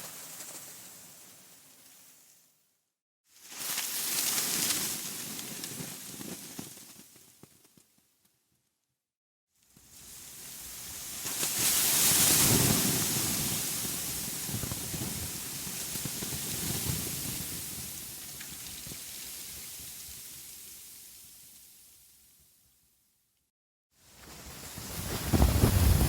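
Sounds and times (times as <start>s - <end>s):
wind rushing through forest: 24.1s - 26.0s.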